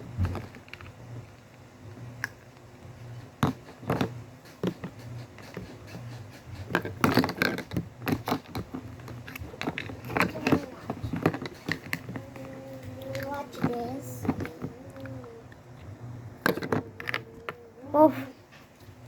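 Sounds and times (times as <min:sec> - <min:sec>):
faint low hum: 0:00.0 - 0:19.0
small objects clicking and scraping: 0:03.4 - 0:15.2.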